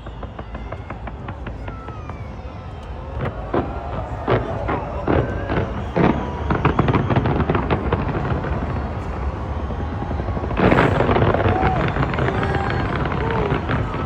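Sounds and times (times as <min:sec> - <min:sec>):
fireworks exploding: 0:00.0 - 0:14.0.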